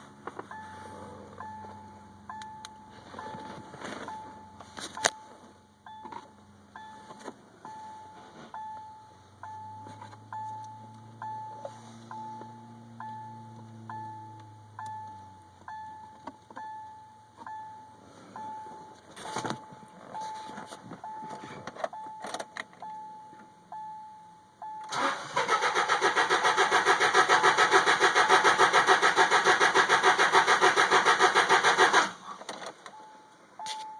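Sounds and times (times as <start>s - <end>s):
car warning chime beeping: 0.1s - 33.9s
car engine cranking on starter: 24.8s - 33.0s.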